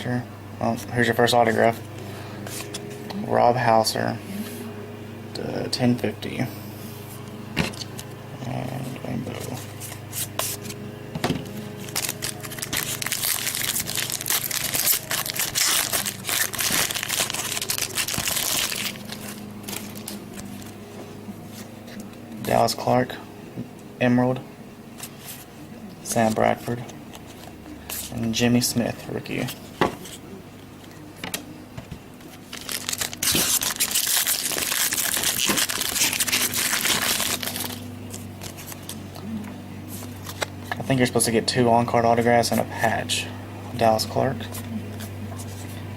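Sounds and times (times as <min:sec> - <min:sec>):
foil wrapper tearing and crinkling: 0:11.8 - 0:20.8, 0:32.4 - 0:39.0.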